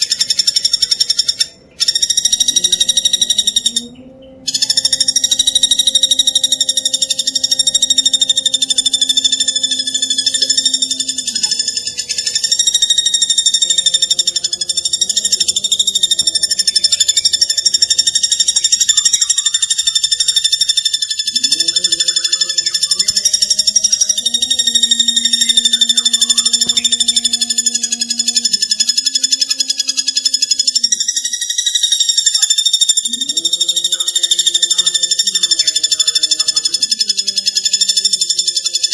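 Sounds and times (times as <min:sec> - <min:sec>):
woodpecker rattling trill: 0:00.0 - 0:38.9
steady low tone: 0:01.5 - 0:18.8.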